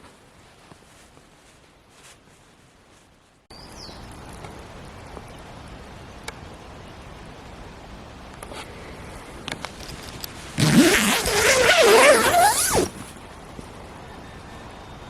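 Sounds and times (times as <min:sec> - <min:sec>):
outdoor ambient hiss: 0:00.0 - 0:15.0.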